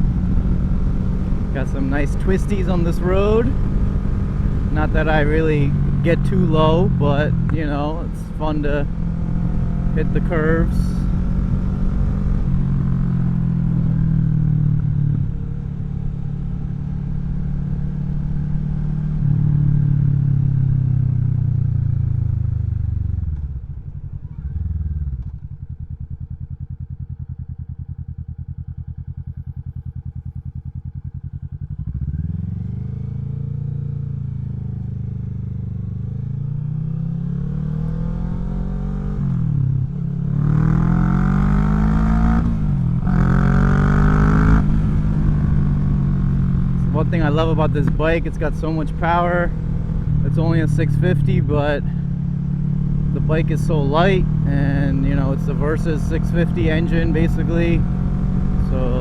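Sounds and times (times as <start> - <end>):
motorcycle engine revving: 0.0 - 59.0
motorcycle engine idling: 19.8 - 36.9.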